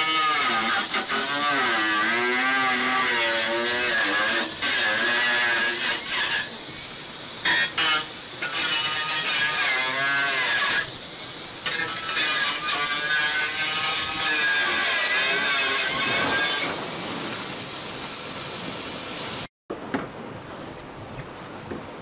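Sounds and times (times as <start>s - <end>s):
power tool cutting or sanding: 0.0s - 6.6s, 7.4s - 11.0s, 11.6s - 16.8s.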